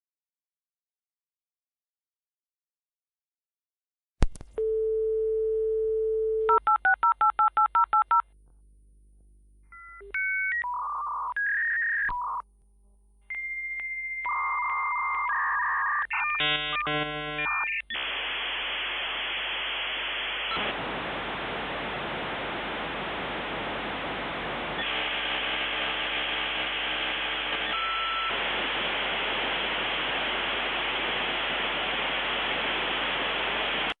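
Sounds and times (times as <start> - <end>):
dial tone: 4.6 - 8.2, 13.3 - 17.8, 27.7 - 28.3
loud hissing static: 17.0 - 34.0.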